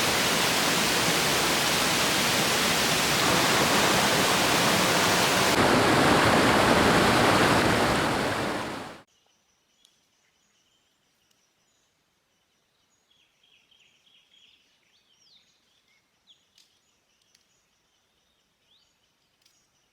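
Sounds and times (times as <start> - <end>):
rushing river water: 0.0 - 9.0
small birds chirping: 0.0 - 9.0.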